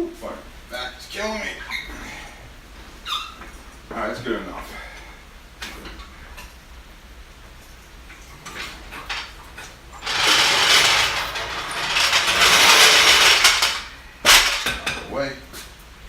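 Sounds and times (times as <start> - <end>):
metal gear clattering: 10.0 - 14.6.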